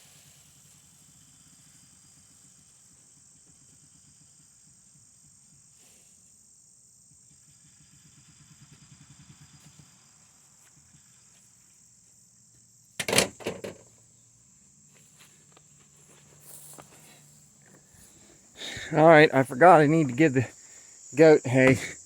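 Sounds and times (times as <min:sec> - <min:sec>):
insect chirring: 0:10.7 - 0:22.0.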